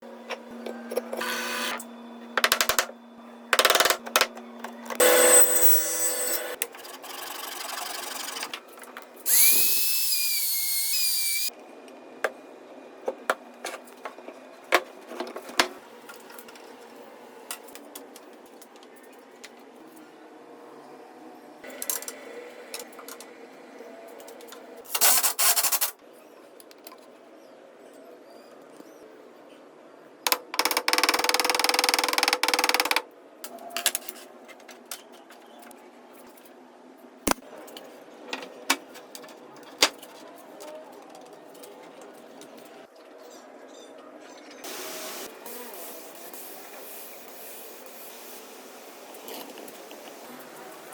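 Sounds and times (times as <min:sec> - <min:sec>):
woodworking power tools running: 0:01.1 - 0:01.8, 0:04.9 - 0:06.6.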